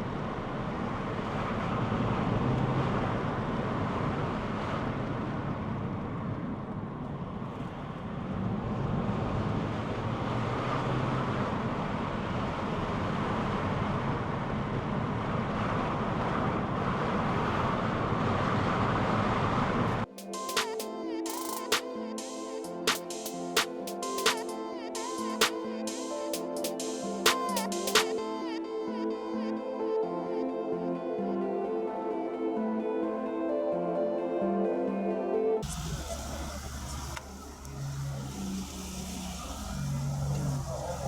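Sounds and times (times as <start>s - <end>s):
car road and wind noise: 0.0s - 20.1s, 35.6s - 41.0s
music: 20.1s - 39.1s.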